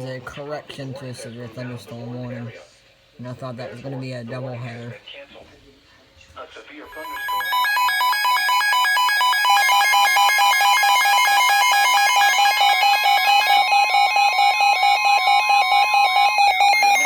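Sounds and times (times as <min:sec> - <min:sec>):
pulsing electronic beeps: 0:06.9 - 0:17.0
steady high tone: 0:06.9 - 0:17.0.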